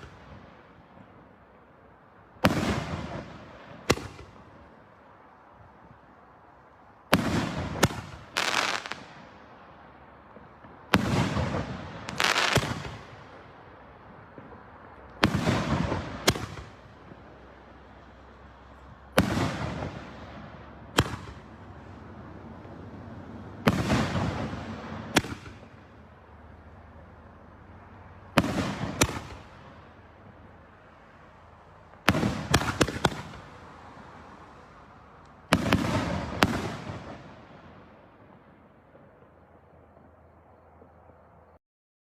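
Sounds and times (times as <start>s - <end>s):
fireworks bangs: 0.0s - 1.1s, 2.4s - 4.8s, 7.1s - 9.4s, 10.2s - 17.6s, 19.1s - 22.0s, 23.5s - 25.9s, 28.3s - 29.9s, 31.9s - 33.7s, 35.5s - 39.3s
fireworks hissing tail: 7.1s - 9.3s, 10.9s - 13.2s.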